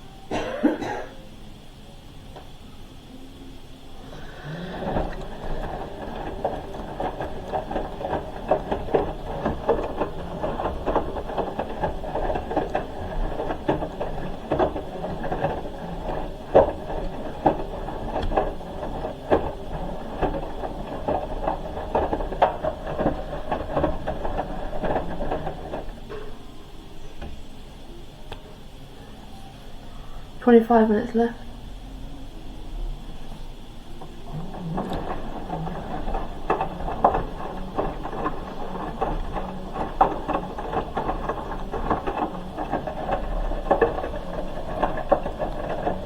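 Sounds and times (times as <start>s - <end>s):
washing machine motor hum: 0.0s - 46.0s
wet laundry tumbling knocks: 4.1s - 27.5s, 33.9s - 46.0s.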